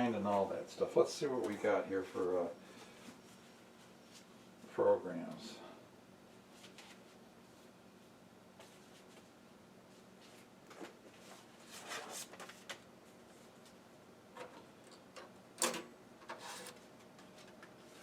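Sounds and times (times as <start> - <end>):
floppy disk clicks and scrapes: 16.2 - 16.8.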